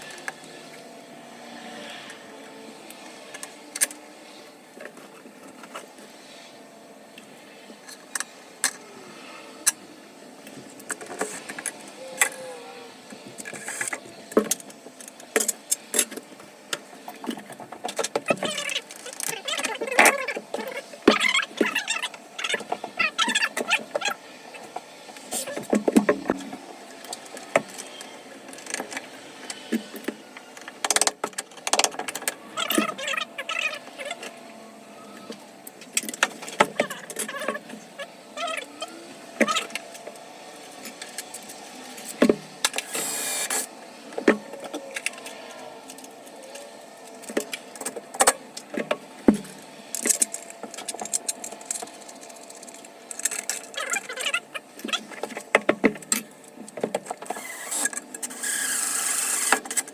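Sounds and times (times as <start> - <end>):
tools and metal parts clattering: 46.1 - 58.3.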